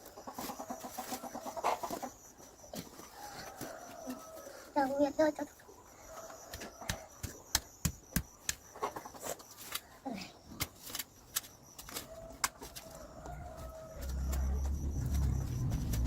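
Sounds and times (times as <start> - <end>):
chickens clucking: 0.0 - 7.5, 8.4 - 16.0
vehicle engine rumble: 14.0 - 16.0.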